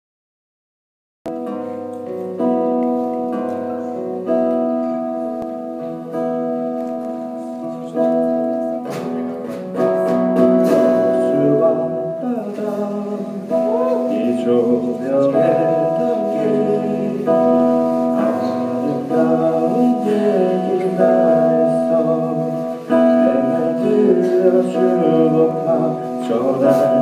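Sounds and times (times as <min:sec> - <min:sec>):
wavering melody line: 0:09.8 - 0:27.0.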